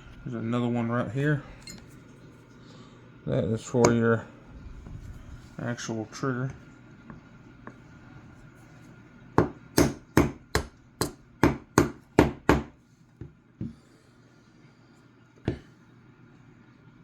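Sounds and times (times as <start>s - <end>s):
hammer tapping a pin punch: 9.4s - 12.8s.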